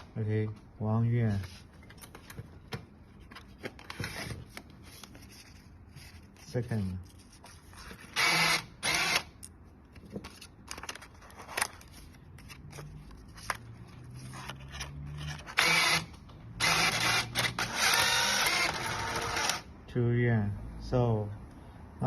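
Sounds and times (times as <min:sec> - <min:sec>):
noisy bursts of payment acceptor: 0:08.2 - 0:09.3, 0:15.4 - 0:19.7.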